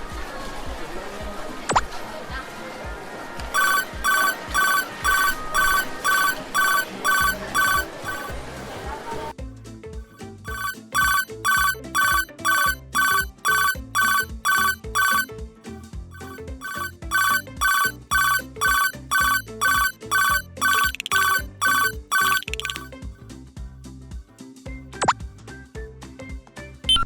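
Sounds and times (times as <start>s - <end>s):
cartoon background music: 3.6s - 8.3s, 10.2s - 15.3s, 16.2s - 22.9s.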